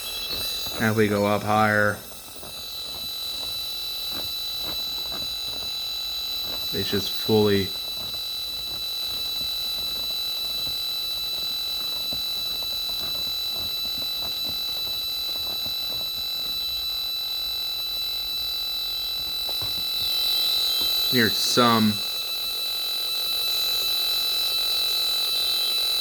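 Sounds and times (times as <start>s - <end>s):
high-pitched whine: 0.0s - 9.2s, 19.2s - 26.0s
radio receiver hiss: 0.0s - 10.7s, 19.5s - 26.0s
faint steady tones: 0.0s - 26.0s.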